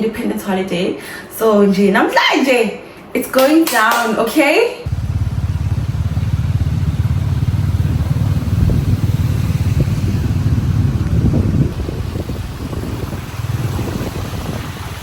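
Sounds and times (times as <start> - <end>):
motorbike engine running: 4.8 - 15.0.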